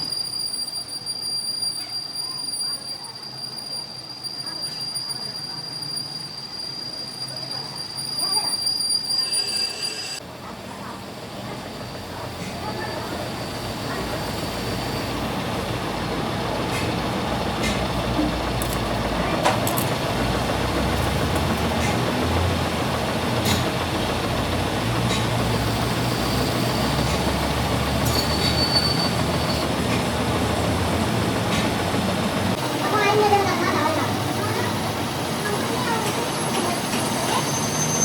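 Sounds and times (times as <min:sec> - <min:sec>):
high squeal: 0:00.0 - 0:10.2, 0:25.0 - 0:32.0, 0:35.4 - 0:38.0
heavy machinery running: 0:11.1 - 0:38.0.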